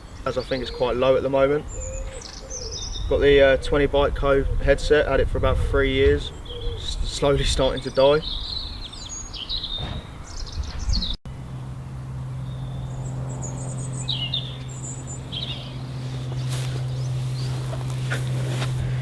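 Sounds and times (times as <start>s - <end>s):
small birds chirping: 0.0s - 3.4s, 6.2s - 11.2s, 12.4s - 19.0s
steady low hum: 11.3s - 19.0s.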